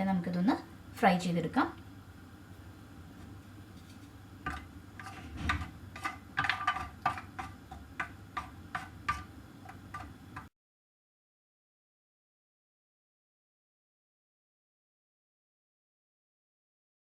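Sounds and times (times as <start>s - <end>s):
nuts frying in oil: 4.2s - 10.5s.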